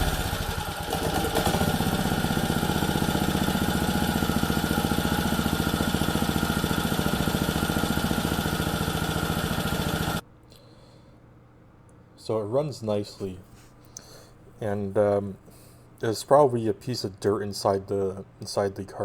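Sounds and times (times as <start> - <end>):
small engine idling: 0.0 - 10.2.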